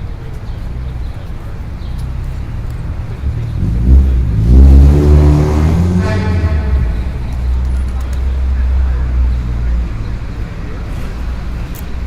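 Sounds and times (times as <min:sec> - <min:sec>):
street traffic rumbling: 0:00.0 - 0:12.0
large vehicle engine accelerating: 0:02.0 - 0:11.8.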